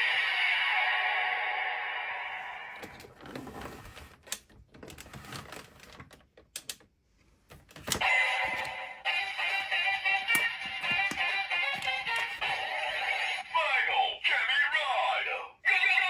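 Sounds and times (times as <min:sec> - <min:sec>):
toy playing electronic music: 0:08.0 - 0:14.7.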